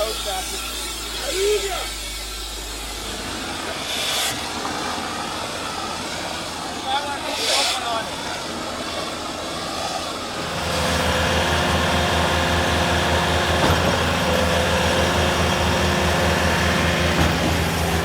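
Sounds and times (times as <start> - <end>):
large engine running: 10.4 - 18.0.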